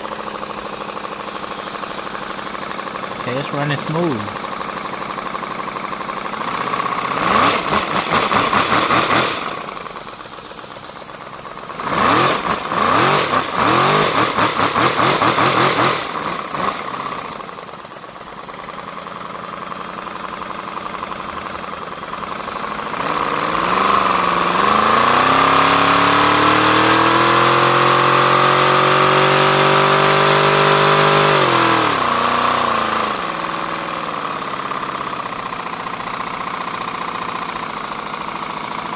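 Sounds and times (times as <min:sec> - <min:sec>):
compressed-air engine running: 0:00.0 - 0:04.8.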